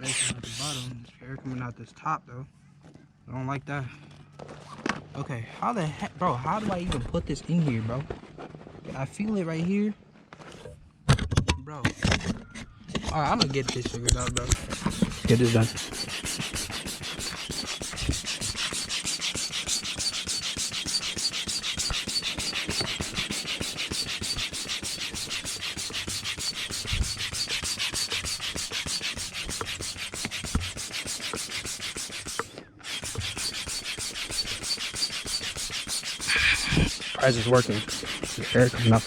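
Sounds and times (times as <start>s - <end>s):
manual air pump whooshing strokes: 0.0s - 1.0s, 14.4s - 39.0s.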